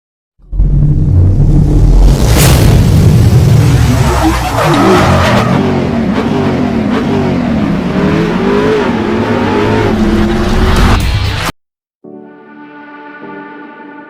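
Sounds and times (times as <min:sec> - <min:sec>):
car engine revving: 0:00.4 - 0:11.0.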